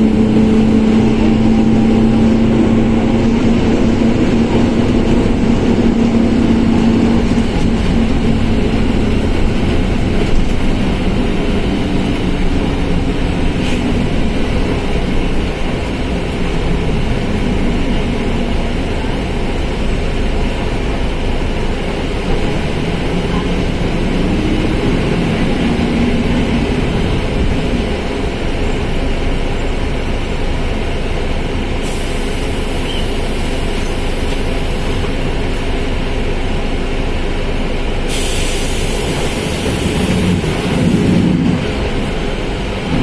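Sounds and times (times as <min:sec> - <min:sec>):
diesel bus engine running: 0:00.0 - 0:43.0
hiss: 0:31.8 - 0:35.2, 0:38.1 - 0:41.2.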